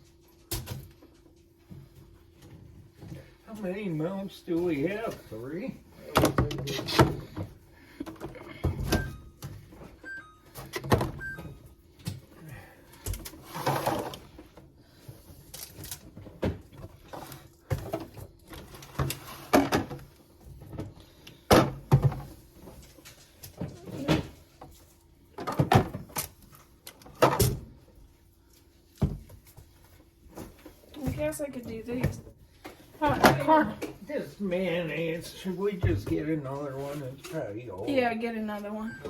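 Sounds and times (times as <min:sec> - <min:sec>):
plastic containers clattering: 0:06.0 - 0:09.8, 0:25.4 - 0:26.4.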